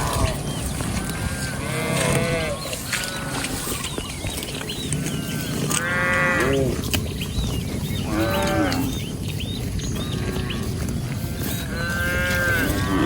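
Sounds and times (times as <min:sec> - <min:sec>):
cattle mooing: 0:00.0 - 0:03.8, 0:05.0 - 0:06.9, 0:07.9 - 0:09.2, 0:09.8 - 0:13.0.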